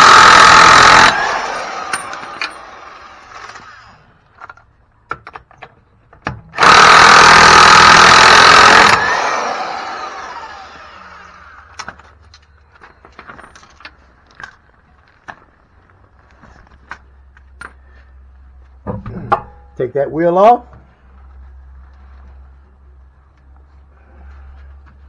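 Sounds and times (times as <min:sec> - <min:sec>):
impact wrench whirring: 0:00.0 - 0:03.8, 0:06.6 - 0:11.4
metal clicks and clinks: 0:01.5 - 0:02.7.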